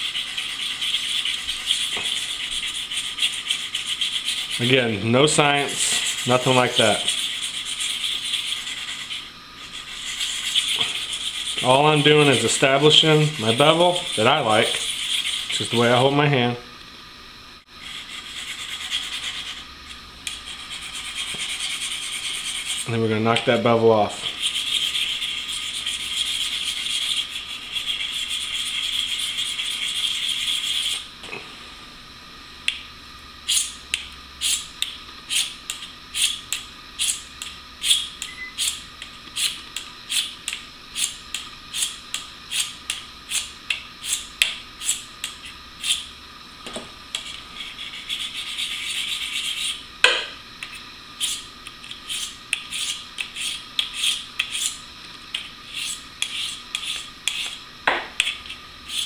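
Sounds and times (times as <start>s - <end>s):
blade scraping sharpening stone: 51.2s - 51.4s, 52.1s - 54.8s, 55.4s - 57.6s.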